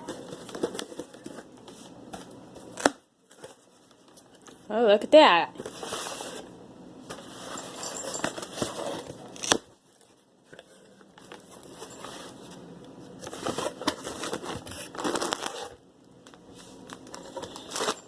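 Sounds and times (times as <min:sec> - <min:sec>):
packaging crinkling: 0:13.3 - 0:15.8.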